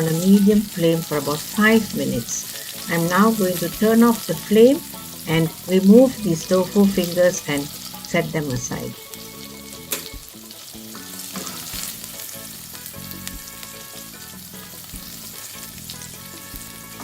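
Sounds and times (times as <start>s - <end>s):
food sizzling in hot oil: 0.0s - 17.0s
utensil clicking against pan: 9.9s - 10.2s.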